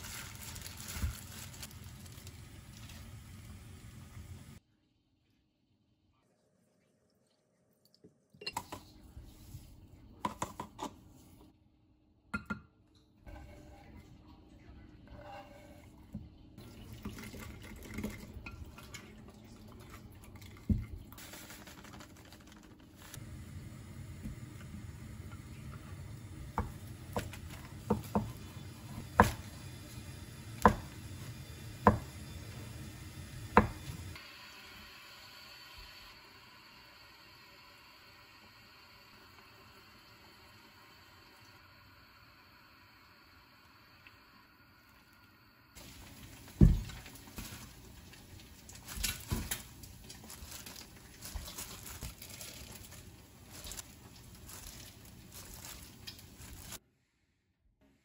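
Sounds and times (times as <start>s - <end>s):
rustle of food being handled: 0.0s - 3.7s, 21.2s - 23.3s, 45.8s - 56.8s.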